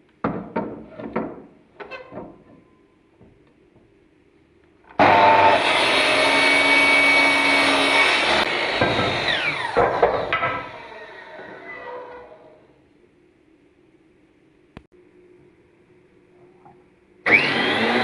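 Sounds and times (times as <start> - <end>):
scraping knocks: 0.2 - 4.0
power tool running: 5.0 - 10.0, 17.3 - 18.0.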